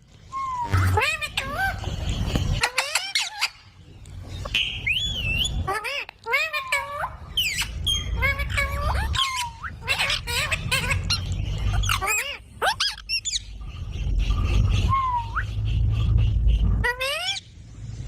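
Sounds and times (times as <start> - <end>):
parakeets squawking and chirping: 0.4 - 17.7
low rumble: 7.2 - 18.0.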